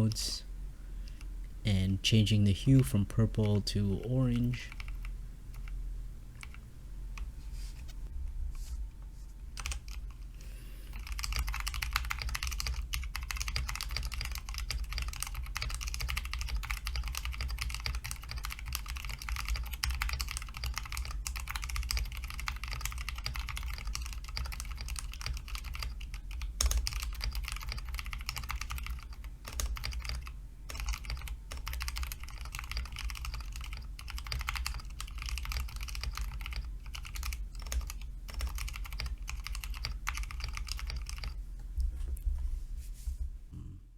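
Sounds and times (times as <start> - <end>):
typing on mechanical keyboard: 4.7 - 5.7, 6.4 - 6.6, 9.6 - 10.2, 10.9 - 41.4.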